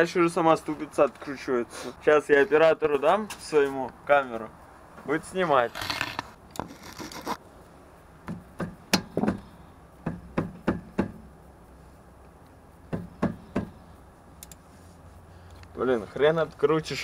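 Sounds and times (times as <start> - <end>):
sharp knocks of hard objects: 8.2 - 11.3, 12.9 - 13.8.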